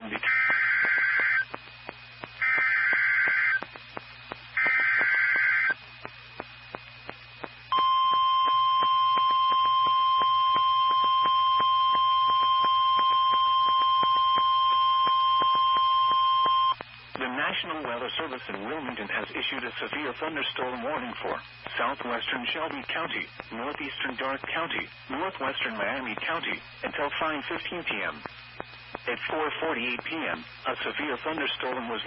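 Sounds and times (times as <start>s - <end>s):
faint radio static clicks: 0.0s - 32.0s
screechy digital header tones: 0.2s - 1.6s, 2.4s - 3.7s, 4.6s - 5.8s
steady warning alarm tone: 0.3s - 1.6s, 2.3s - 3.7s, 4.6s - 5.8s, 7.7s - 16.8s.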